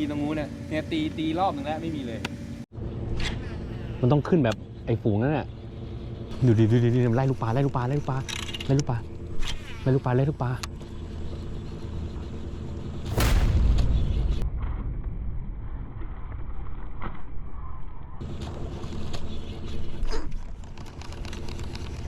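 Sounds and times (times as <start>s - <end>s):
steady low hum: 0.0s - 22.0s
fish striking with a splash: 13.1s - 14.0s.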